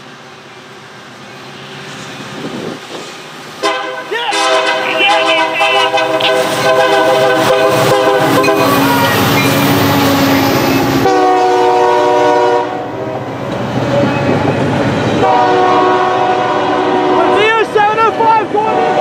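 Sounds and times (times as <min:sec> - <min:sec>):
locomotive air horn blasts: 0:03.6 - 0:09.4, 0:10.7 - 0:12.9, 0:15.2 - 0:17.5, 0:18.6 - 0:19.0.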